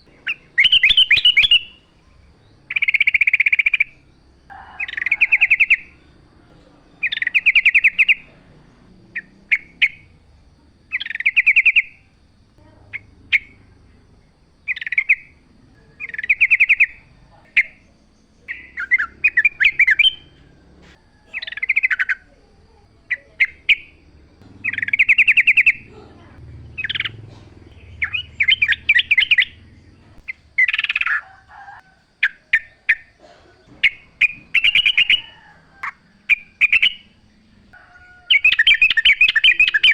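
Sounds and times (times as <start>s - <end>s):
sharp bird notes: 0.0s - 1.8s, 23.2s - 31.3s
bulbul singing bubbly phrases: 6.9s - 20.4s, 21.4s - 31.2s.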